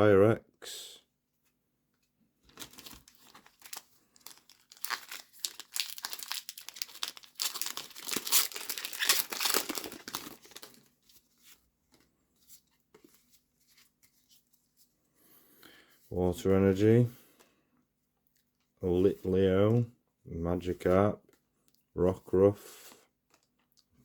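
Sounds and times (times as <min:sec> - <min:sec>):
foil wrapper crinkling and tearing: 0:02.5 - 0:11.0.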